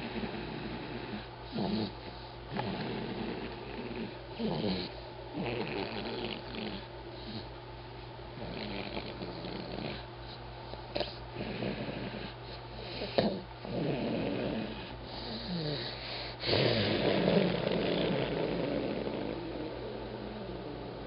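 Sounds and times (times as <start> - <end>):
man snoring: 0.0 - 1.9, 2.5 - 6.8, 13.0 - 20.8.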